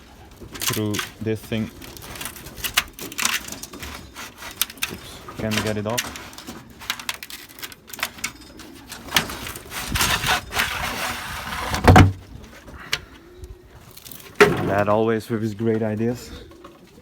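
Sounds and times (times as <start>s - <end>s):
pigeons cooing: 0.0s - 14.4s, 15.4s - 17.0s
loud thump: 11.8s - 12.2s.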